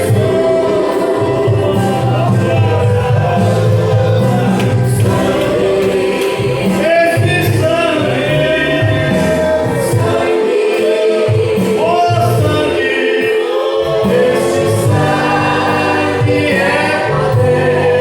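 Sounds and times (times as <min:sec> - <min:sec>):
choir singing: 0:00.0 - 0:18.0
instrumental accompaniment: 0:00.0 - 0:18.0.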